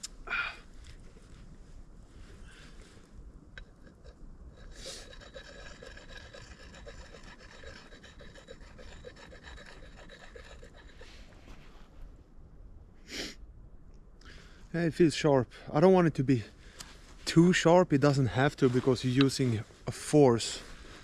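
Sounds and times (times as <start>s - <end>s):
sharpening tool rasping on steel: 4.6s - 11.1s.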